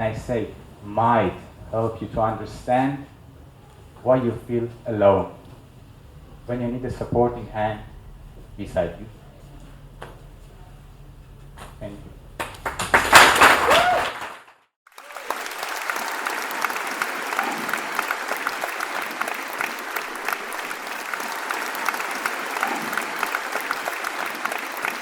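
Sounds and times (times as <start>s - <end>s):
audience applauding: 12.4s - 25.0s.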